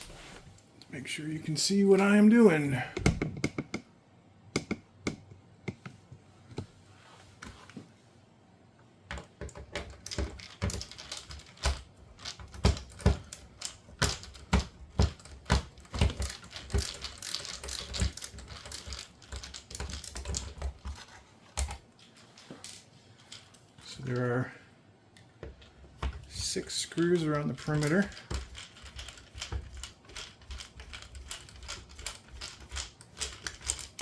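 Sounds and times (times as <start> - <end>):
screwdriver clicking and tapping: 4.6 - 5.9.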